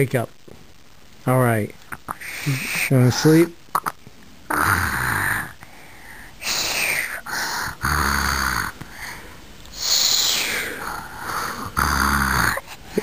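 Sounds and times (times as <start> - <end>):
child fake-snoring: 4.5 - 9.2, 9.8 - 13.0.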